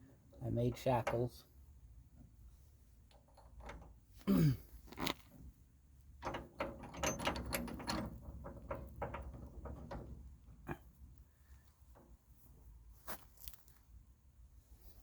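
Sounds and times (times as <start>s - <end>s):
metal parts clinking and knocking: 6.2s - 10.7s.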